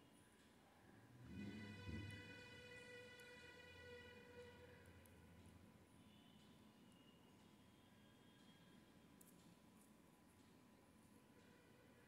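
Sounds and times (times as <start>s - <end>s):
faint background music: 0.0s - 9.4s.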